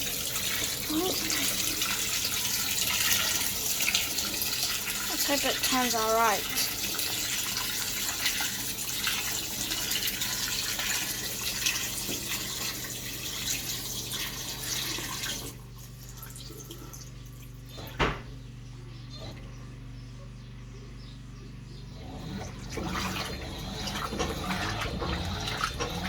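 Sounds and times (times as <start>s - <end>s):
water rushing into washing machine: 0.0s - 18.2s, 22.0s - 26.0s
low steady hum: 0.0s - 26.0s.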